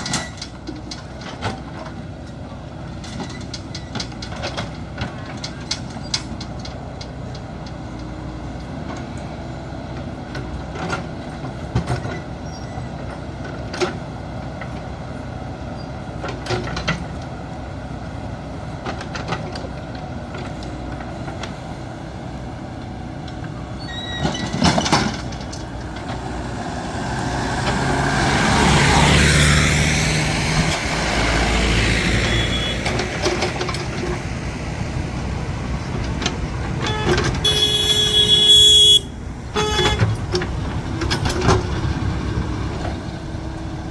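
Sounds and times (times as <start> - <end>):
diesel engine running: 0.0 - 43.9
metallic clanks and knocks: 23.3 - 28.1, 32.8 - 37.8
loud rush of noise: 25.7 - 37.8.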